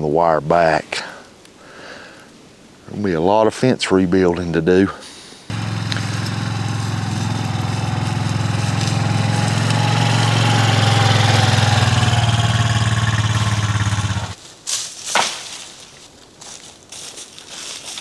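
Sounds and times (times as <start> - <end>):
engine running: 5.5 - 14.4.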